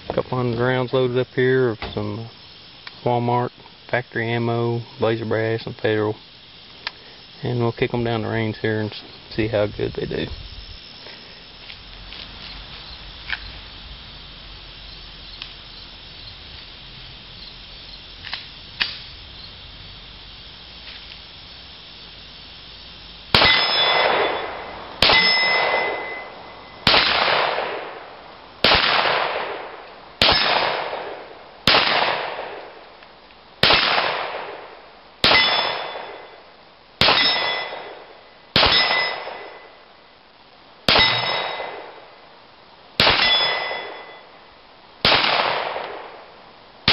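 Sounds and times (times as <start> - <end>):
pistol shots: 23.3 - 28.0, 28.6 - 32.7, 33.6 - 36.3, 37.0 - 39.6, 40.9 - 42.0, 43.0 - 44.2, 45.0 - 46.3
steel plate ringing: 23.4 - 26.9, 35.3 - 36.2, 37.1 - 37.9, 38.6 - 39.7, 40.9 - 41.9, 43.2 - 44.3.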